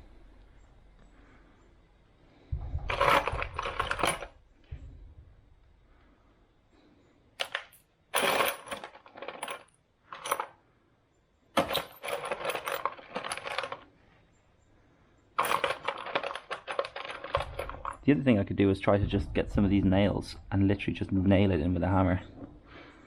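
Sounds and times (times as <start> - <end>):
screws and nails rattling: 2.6 - 4.4, 7.4 - 10.6, 11.6 - 13.9, 15.4 - 18.1.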